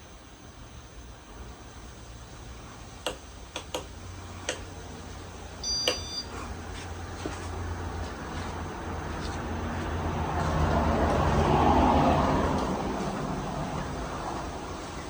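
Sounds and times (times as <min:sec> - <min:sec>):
ceiling fan motor hum: 0:00.0 - 0:15.0
sharp clicks: 0:03.0 - 0:04.7, 0:05.8 - 0:06.1
short electronic beep: 0:05.6 - 0:06.3.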